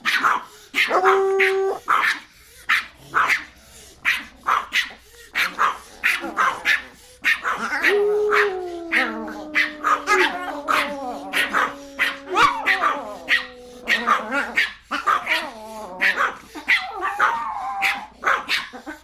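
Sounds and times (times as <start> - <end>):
small dogs barking: 0.0 - 19.0
long steady falling tone: 7.9 - 14.1.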